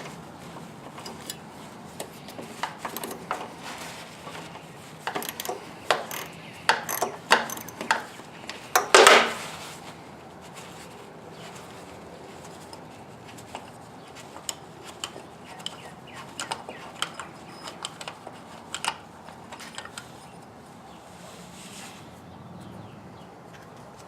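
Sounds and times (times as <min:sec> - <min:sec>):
socket ratchet clicking: 0:05.1 - 0:08.1.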